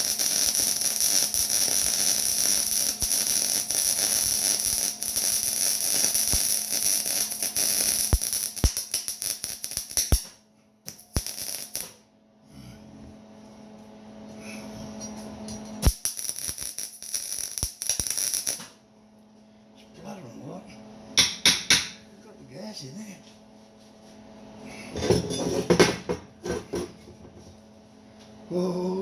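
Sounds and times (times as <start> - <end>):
welding arc crackling: 0.0 - 12.0, 15.8 - 18.7
low steady hum: 0.0 - 25.7.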